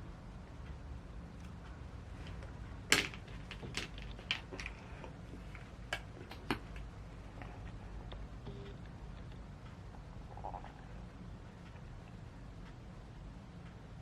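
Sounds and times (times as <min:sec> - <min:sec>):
makeup cases clicking and knocking: 0:02.9 - 0:04.8, 0:06.0 - 0:06.8.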